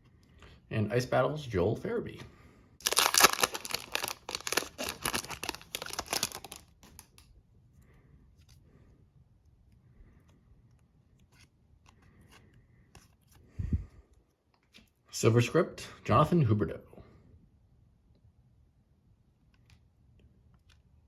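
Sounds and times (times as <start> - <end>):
card pack wrapper crinkling and tearing: 2.8 - 7.2.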